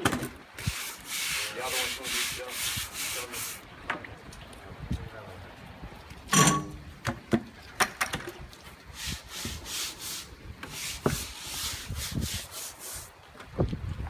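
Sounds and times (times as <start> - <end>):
brush scrubbing wet wood: 0.6 - 3.7, 8.8 - 13.2.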